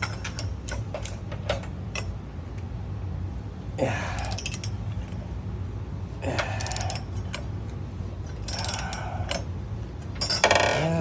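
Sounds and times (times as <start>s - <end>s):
socket ratchet clicking: 4.2s - 4.8s, 8.3s - 9.4s, 10.2s - 10.8s.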